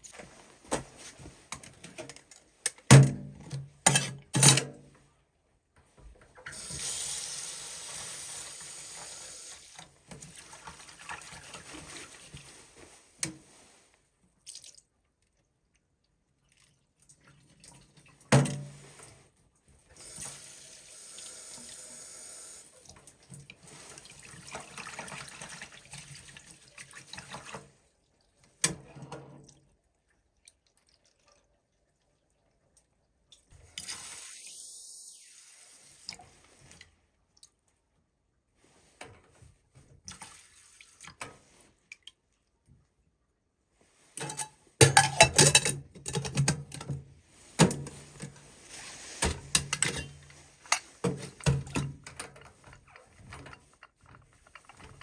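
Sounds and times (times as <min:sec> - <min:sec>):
water pouring into a container: 0:22.8 - 0:27.7.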